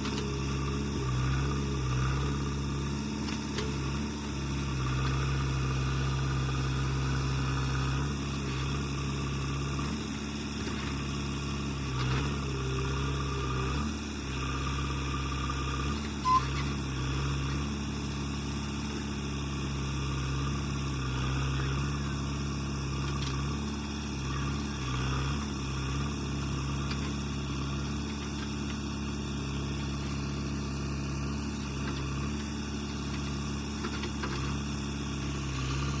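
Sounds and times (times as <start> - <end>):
diesel engine droning: 0.0 - 36.0.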